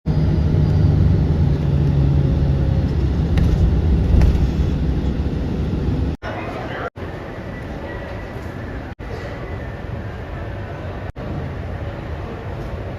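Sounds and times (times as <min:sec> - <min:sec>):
aircraft engines rumbling: 0:00.1 - 0:12.9.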